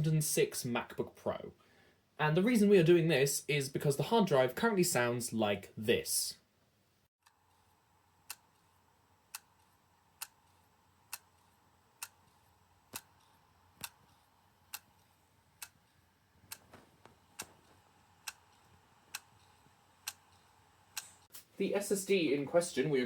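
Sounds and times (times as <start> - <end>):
hard drive clicking: 16.4 - 21.2.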